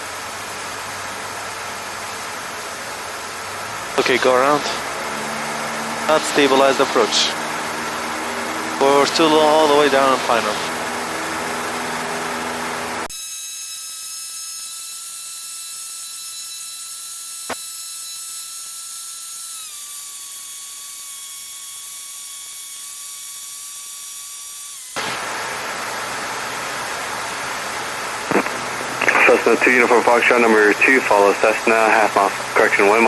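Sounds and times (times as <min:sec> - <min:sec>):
cockpit engine noise: 0:00.0 - 0:13.1, 0:25.0 - 0:33.0
high-pitched whine: 0:03.7 - 0:13.1.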